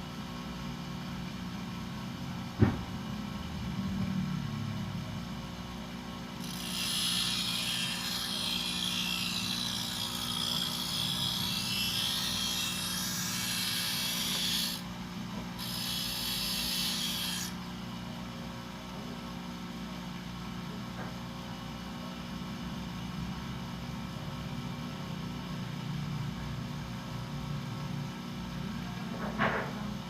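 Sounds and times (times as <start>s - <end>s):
grinder wheel grinding metal: 6.4s - 14.8s, 15.6s - 17.6s
grinder humming: 6.4s - 17.6s.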